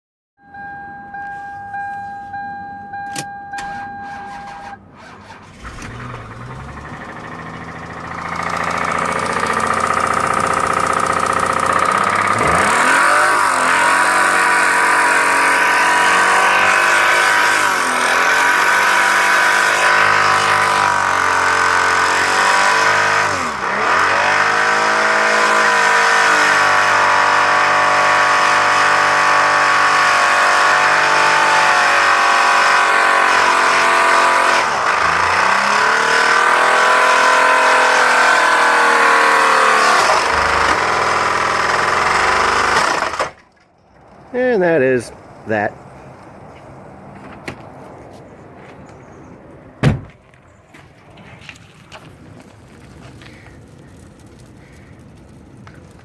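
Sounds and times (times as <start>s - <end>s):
car engine revving with rod knock: 5.5s - 43.5s.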